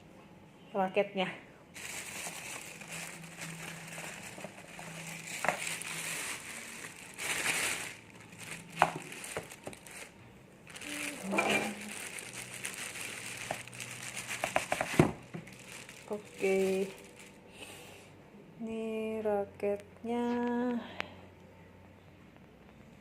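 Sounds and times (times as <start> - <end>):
plastic packaging crinkling: 1.8 - 17.5.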